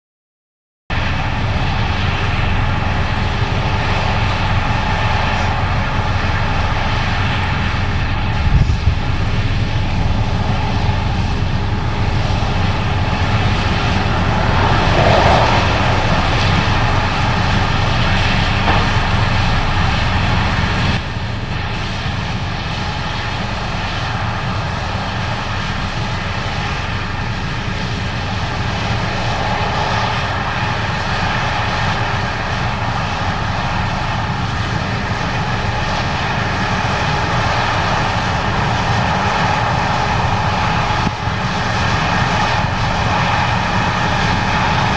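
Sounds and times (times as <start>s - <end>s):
diesel engine drone: 0.9s - 44.9s
threshing machinery noise: 1.0s - 44.9s.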